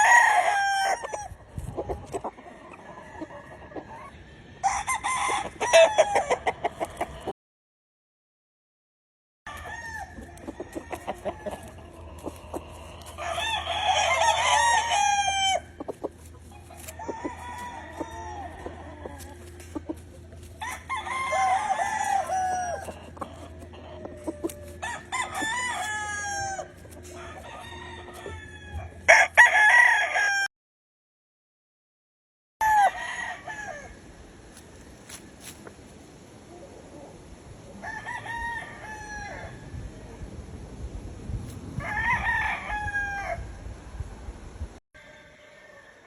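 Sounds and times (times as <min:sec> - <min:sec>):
chicken clucks and calls: 0:00.0 - 0:07.3, 0:09.5 - 0:30.5, 0:33.4 - 0:40.6
roosters crowing: 0:00.0 - 0:07.3, 0:09.5 - 0:30.5, 0:32.6 - 0:35.7, 0:37.0 - 0:40.3, 0:41.6 - 0:43.7, 0:45.0 - 0:46.0.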